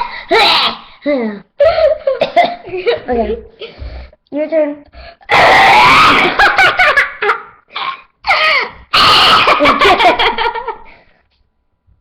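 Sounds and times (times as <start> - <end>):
loud laughter: 5.6 - 7.6, 8.9 - 10.9.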